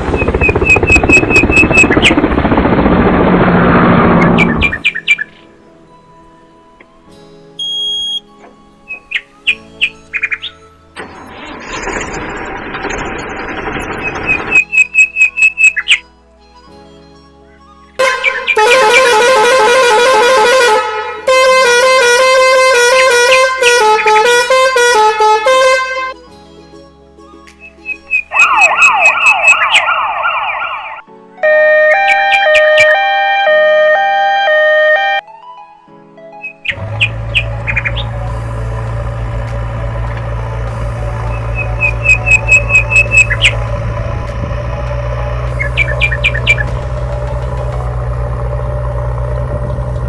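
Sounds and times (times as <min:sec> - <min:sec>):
low machine hum: 0:00.0 - 0:05.2, 0:36.7 - 0:50.0
birds chirping: 0:04.1 - 0:05.9, 0:08.3 - 0:11.0, 0:13.4 - 0:16.1, 0:17.3 - 0:19.1, 0:27.4 - 0:31.1, 0:31.8 - 0:33.2, 0:36.4 - 0:48.2
musical horn playing a tune: 0:18.0 - 0:26.2, 0:31.4 - 0:35.3.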